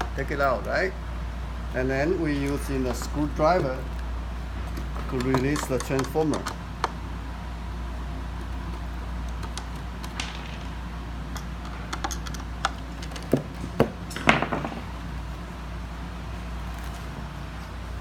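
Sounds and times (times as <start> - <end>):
steady low hum: 0.0 - 18.0
screwdriver clicks and metallic taps: 5.1 - 7.0, 11.4 - 13.4.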